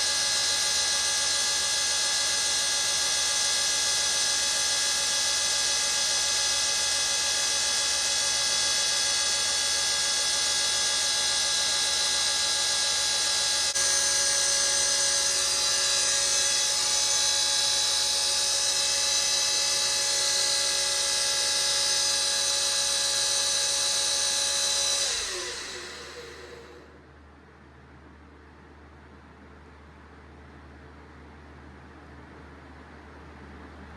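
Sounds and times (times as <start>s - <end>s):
pump motor whining: 0.0s - 27.0s.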